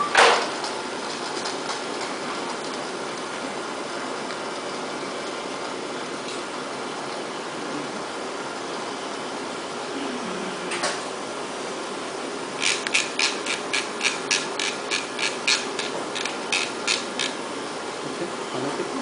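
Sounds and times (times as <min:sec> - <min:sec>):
surgical instruments tapping: 0:12.6 - 0:17.4.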